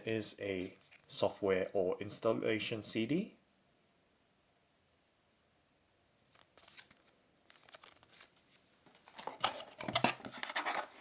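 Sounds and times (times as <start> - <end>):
paper rustling: 0.5 - 1.2, 6.2 - 11.0.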